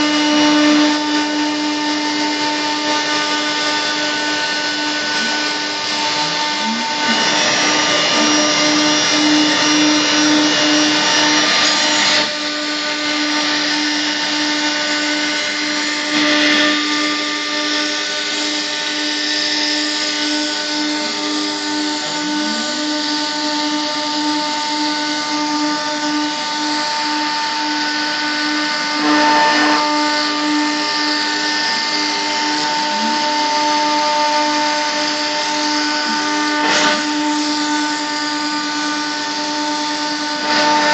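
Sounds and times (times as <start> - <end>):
cnc router spindle whine: 0.0 - 40.9
cutting hiss: 3.6 - 14.7.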